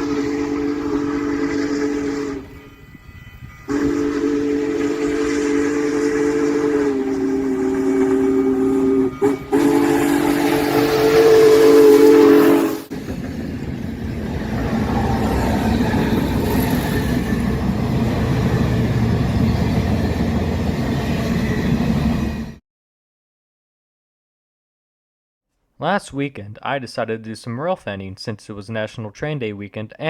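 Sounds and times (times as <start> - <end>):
locomotive air horn chord: 0.0 - 12.9
train rolling past rumbling: 0.0 - 22.6.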